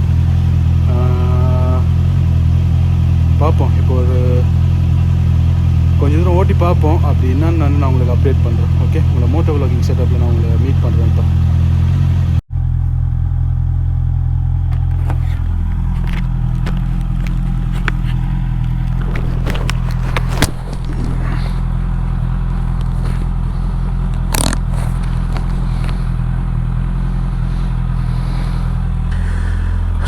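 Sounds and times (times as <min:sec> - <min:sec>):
motorcycle engine idling: 0:00.0 - 0:30.0
handling clicks and scrapes: 0:14.7 - 0:26.4.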